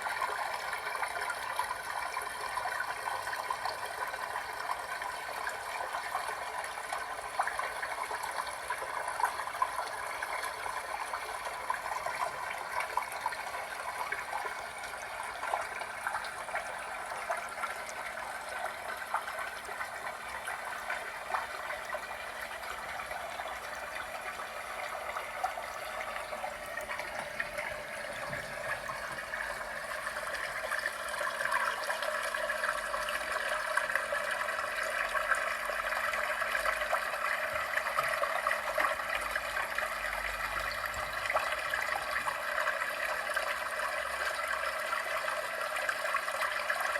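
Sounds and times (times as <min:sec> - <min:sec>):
fountain water trickling: 0:00.0 - 0:46.9
small water drips: 0:00.0 - 0:46.9.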